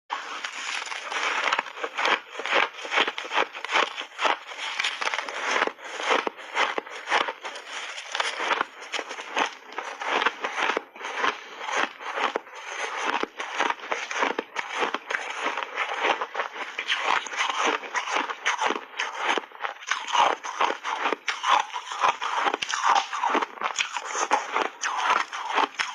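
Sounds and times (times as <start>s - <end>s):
ice being chewed and crunched: 0.1s - 25.9s.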